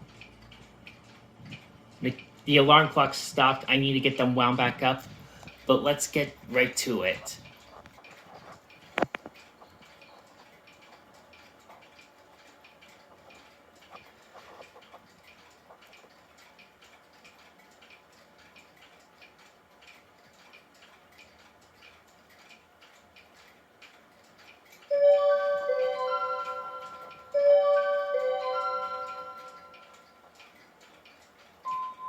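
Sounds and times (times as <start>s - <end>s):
clocks ticking: 0.0s - 32.0s
electronic clock chime: 24.9s - 30.3s, 31.7s - 32.0s.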